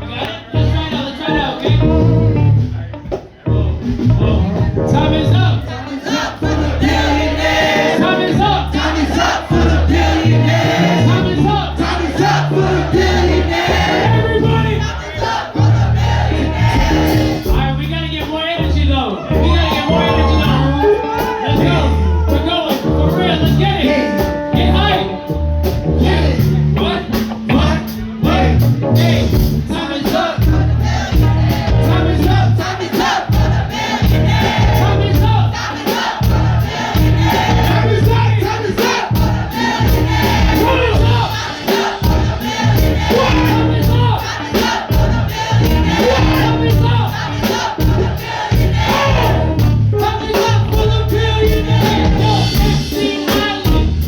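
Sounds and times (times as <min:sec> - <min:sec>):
hip-hop band music with heavy bass: 0:00.0 - 0:54.0
voices chanting and singing: 0:05.2 - 0:17.8, 0:26.1 - 0:54.0.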